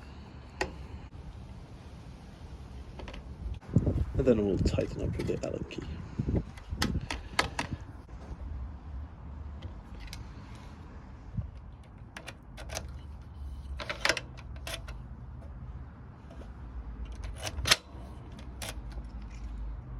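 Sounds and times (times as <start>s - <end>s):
allen key metallic clicks: 6.5s - 8.0s, 9.6s - 10.7s, 11.4s - 15.6s, 16.2s - 19.9s.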